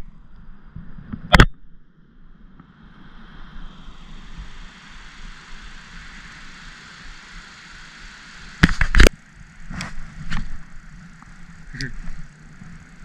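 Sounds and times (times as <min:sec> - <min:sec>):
wind hissing: 0:02.3 - 0:13.0.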